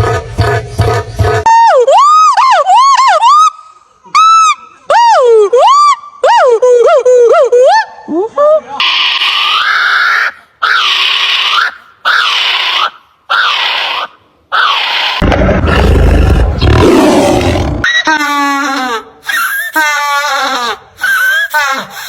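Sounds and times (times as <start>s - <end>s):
animal hoarse calls: 10.7s - 17.9s
animal deep roar: 15.2s - 17.9s.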